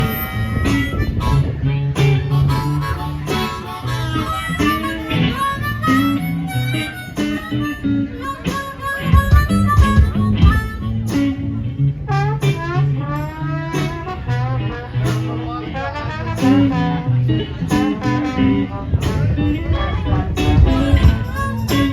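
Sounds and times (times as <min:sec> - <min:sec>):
lead line with bending notes: 0:00.0 - 0:21.9
steady bass line: 0:00.0 - 0:21.9.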